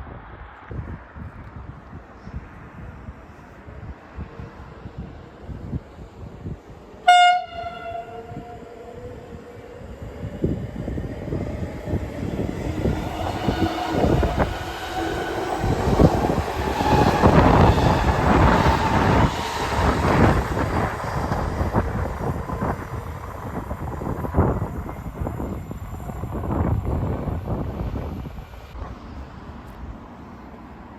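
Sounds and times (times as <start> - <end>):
train wheels rumbling on rails: 0.2 - 30.9
train horn blast: 7.0 - 8.6.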